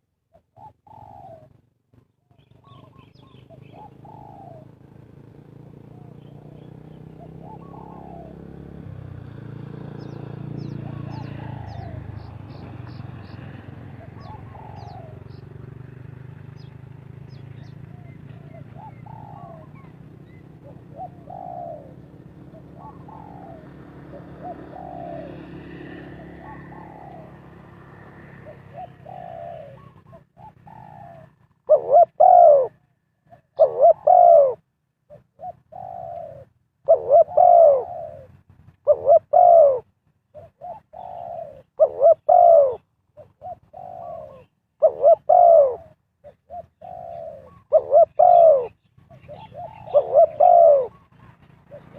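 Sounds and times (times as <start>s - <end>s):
dove cooing: 0.0s - 1.6s, 2.2s - 51.9s.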